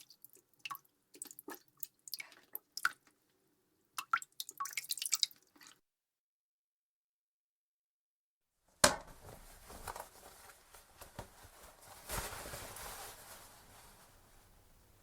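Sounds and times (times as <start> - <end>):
rustling: 9.0 - 15.0.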